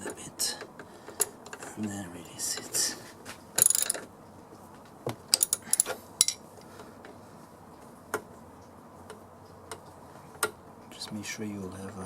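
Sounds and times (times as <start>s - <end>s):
spanners clinking on metal: 3.6s - 4.0s, 5.3s - 6.5s.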